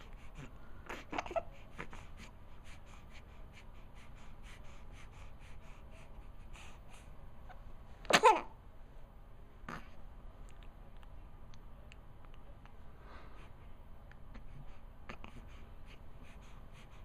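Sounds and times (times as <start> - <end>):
soft breathing: 0.0 - 7.6, 12.4 - 17.0
sharp sneeze: 8.1 - 8.5.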